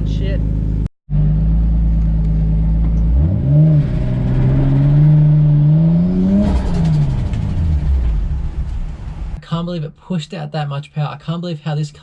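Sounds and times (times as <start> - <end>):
car engine revving: 0.4 - 9.4.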